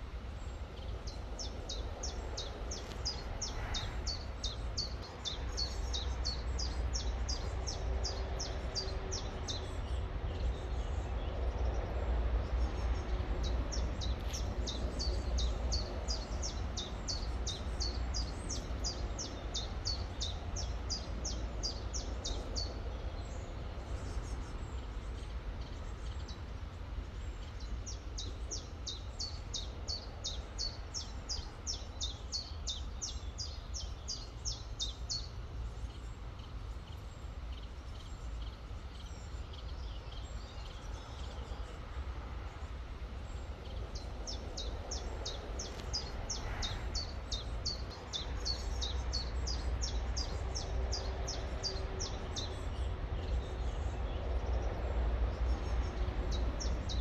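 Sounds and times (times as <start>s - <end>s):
songbird calling: 43.2s - 54.8s.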